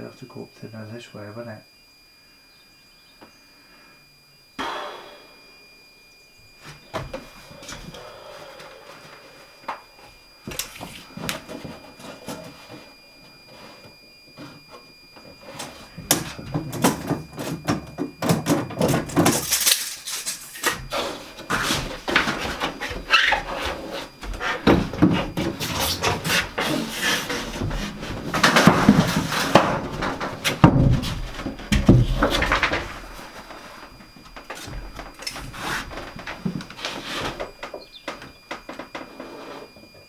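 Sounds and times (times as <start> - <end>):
wood scraping on wood: 19.0 - 40.0
wooden boards knocking: 20.7 - 39.2.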